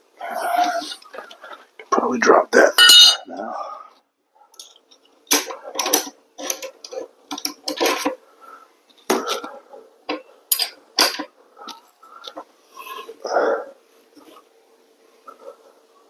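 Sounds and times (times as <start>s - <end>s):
metal tools clinking: 2.8s - 3.3s, 10.5s - 11.2s.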